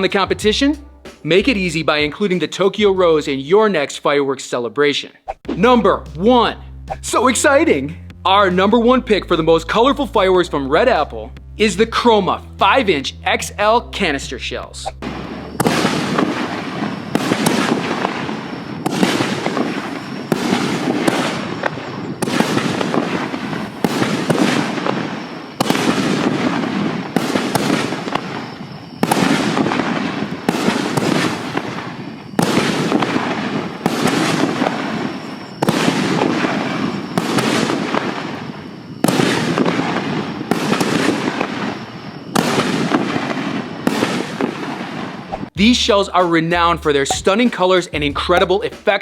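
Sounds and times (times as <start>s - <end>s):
firework shells bursting: 14.9s - 45.6s
firework crackle: 15.0s - 45.3s.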